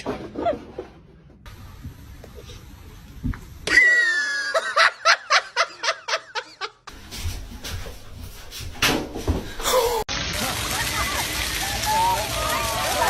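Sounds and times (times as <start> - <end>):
person laughing: 3.7 - 6.8.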